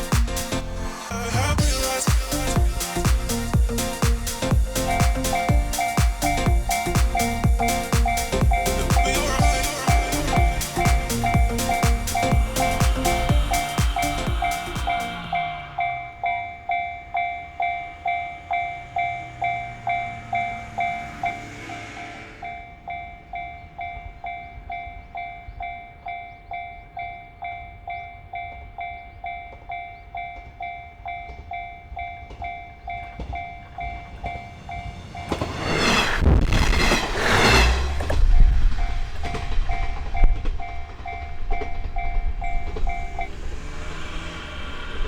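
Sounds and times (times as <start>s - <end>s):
diesel train passing: 0.0s - 45.0s
level crossing bell ringing: 1.6s - 35.4s.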